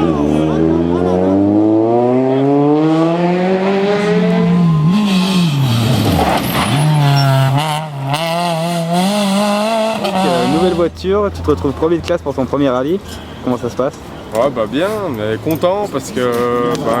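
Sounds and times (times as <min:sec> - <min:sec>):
rally car engine revving: 0:00.0 - 0:11.8.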